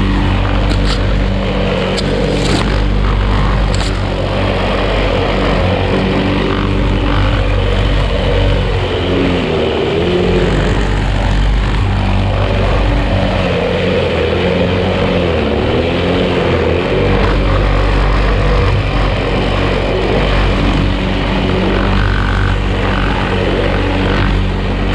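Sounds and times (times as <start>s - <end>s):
lawn mower engine cutting grass: 0.0s - 24.9s.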